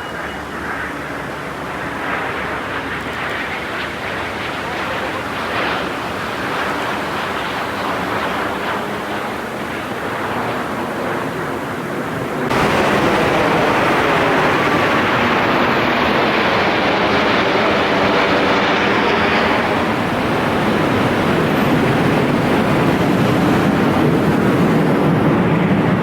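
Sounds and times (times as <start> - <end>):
train rumbling past: 12.5 - 26.0.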